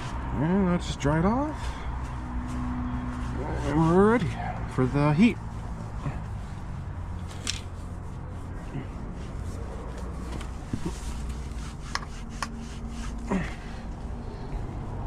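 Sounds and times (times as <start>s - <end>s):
faint rubbing and clicks: 9.3s - 13.2s.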